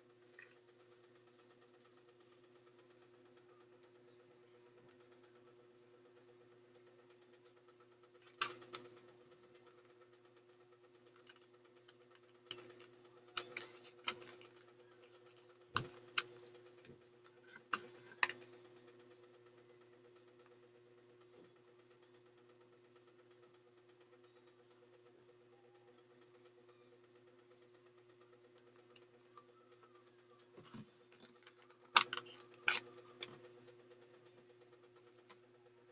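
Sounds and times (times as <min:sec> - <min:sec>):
steady low hum: 0:00.0 - 0:35.9
small items clicking and tapping: 0:11.0 - 0:18.5, 0:30.5 - 0:33.5.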